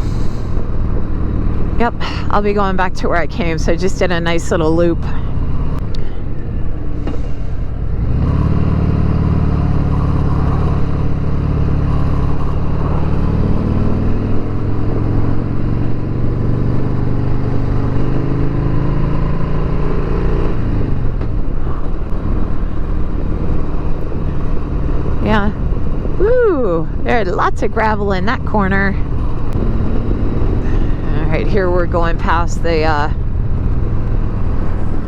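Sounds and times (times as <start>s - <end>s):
motorcycle engine under way: 7.9s - 26.2s, 27.0s - 35.0s.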